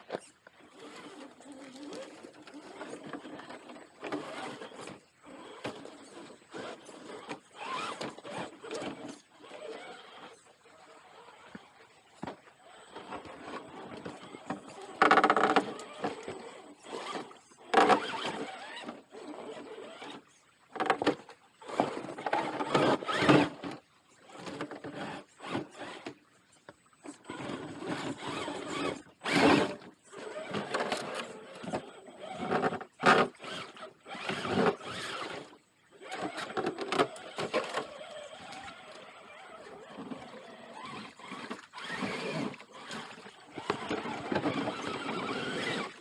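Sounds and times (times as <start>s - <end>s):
tyres scrabbling on rock: 0.0s - 10.3s, 11.5s - 20.1s, 20.8s - 23.7s, 27.3s - 35.4s, 36.0s - 46.0s
electric motor whining: 22.2s - 23.6s, 27.3s - 46.0s.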